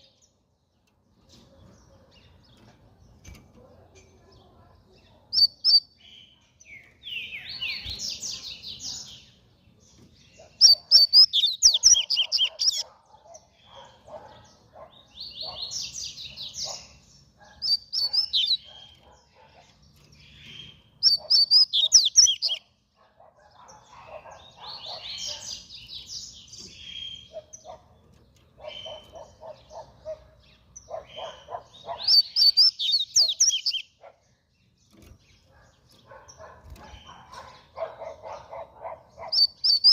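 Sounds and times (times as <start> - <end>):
bird singing trilled notes: 0.0 - 39.9.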